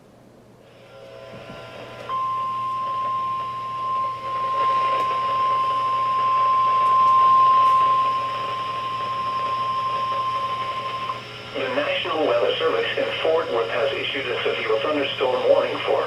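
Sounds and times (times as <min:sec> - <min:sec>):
steady alarm beep: 0:02.1 - 0:16.0
radio static: 0:07.2 - 0:16.0.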